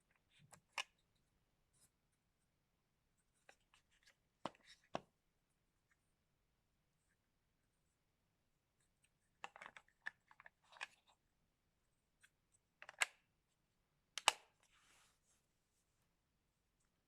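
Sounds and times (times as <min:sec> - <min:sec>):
plastic clicks and taps: 0:14.2 - 0:14.4.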